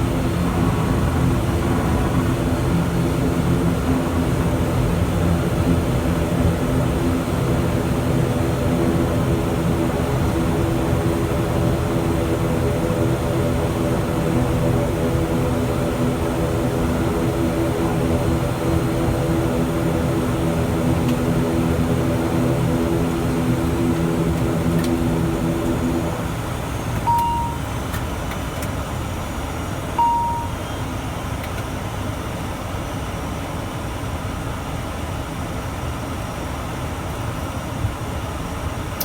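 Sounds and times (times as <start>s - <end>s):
rushing noise: 0.0s - 4.8s
turboprop engines droning: 0.0s - 39.0s
short high beeps: 27.1s - 27.7s, 30.0s - 30.8s.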